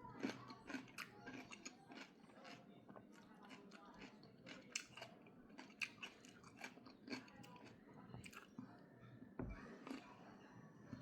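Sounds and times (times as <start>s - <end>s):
person chewing food: 0.0s - 8.5s, 9.8s - 10.0s.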